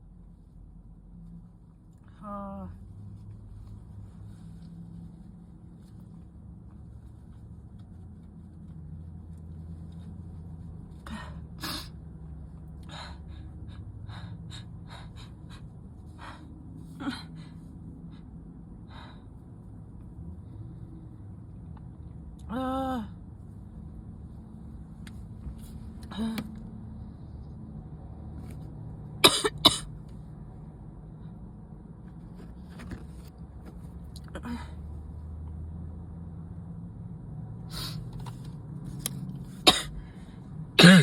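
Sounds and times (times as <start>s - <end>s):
woman sneezing: 40.8s - 41.0s.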